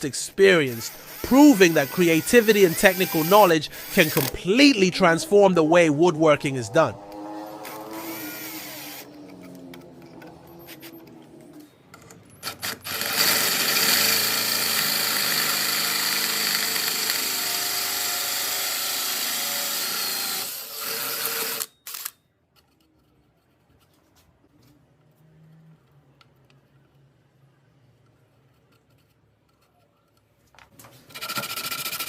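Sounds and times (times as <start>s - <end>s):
power drill with hole saw: 0.5s - 4.4s, 7.6s - 9.1s, 12.4s - 22.1s.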